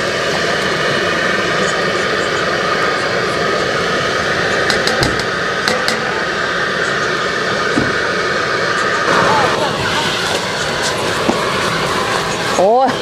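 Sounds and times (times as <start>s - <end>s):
electric blower whirring: 3.4s - 13.0s.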